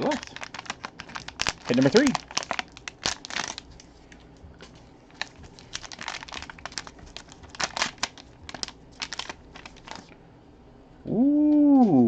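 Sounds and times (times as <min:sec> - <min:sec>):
packaging crinkling: 0:00.0 - 0:10.2.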